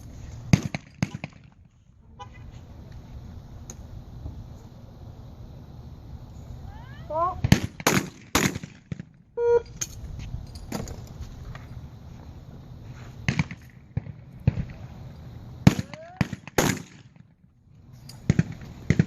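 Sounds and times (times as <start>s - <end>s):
shotgun shots: 0.5s - 1.6s, 7.4s - 9.1s, 13.3s - 14.8s, 15.6s - 17.2s, 18.3s - 19.0s.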